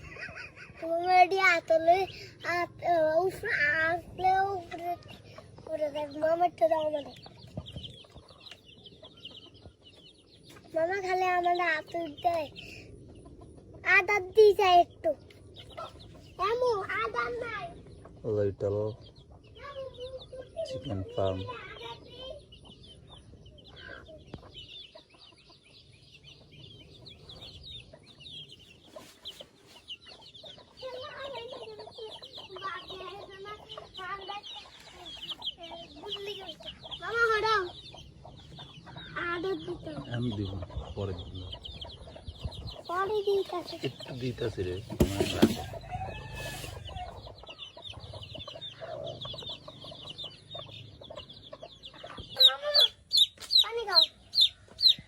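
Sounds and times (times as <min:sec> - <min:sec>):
chicks peeping: 0:00.0 - 0:55.0
lower pitched bird calls: 0:18.9 - 0:55.0.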